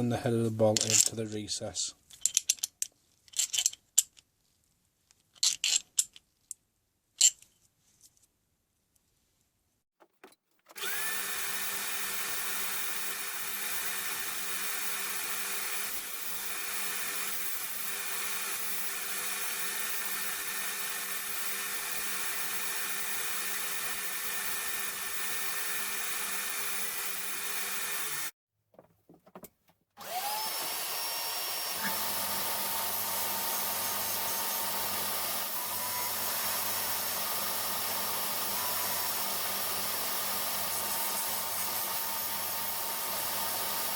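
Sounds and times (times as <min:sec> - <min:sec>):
electric power drill running: 0:10.8 - 0:28.4, 0:30.0 - 0:43.9
small knocks: 0:28.7 - 0:29.8.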